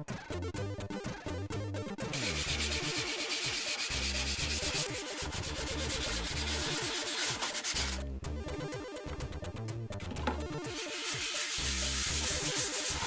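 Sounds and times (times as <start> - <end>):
sandpaper rubbing on plastic: 2.2 - 8.0, 10.7 - 13.0.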